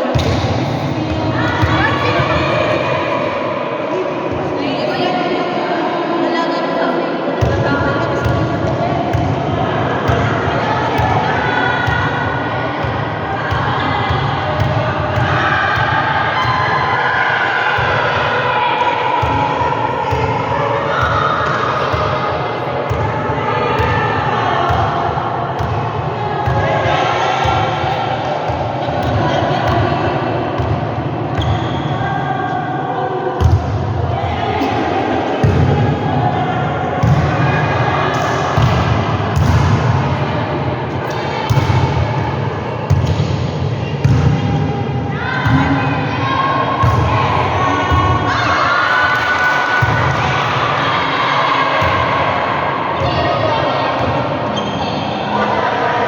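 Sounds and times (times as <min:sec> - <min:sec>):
hubbub of many voices: 0:00.0 - 0:56.0
volleyball thumping on gym floor: 0:00.1 - 0:02.2, 0:35.4 - 0:36.1, 0:38.2 - 0:40.0, 0:41.1 - 0:42.0, 0:42.9 - 0:44.7.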